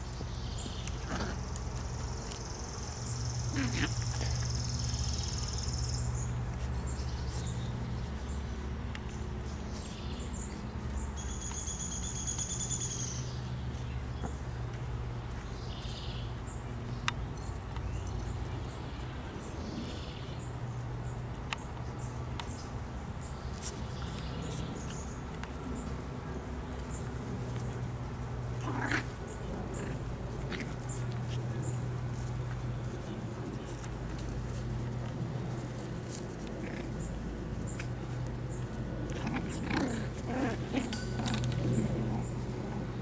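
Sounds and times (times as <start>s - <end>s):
steady low rumble: 13.2s - 43.0s.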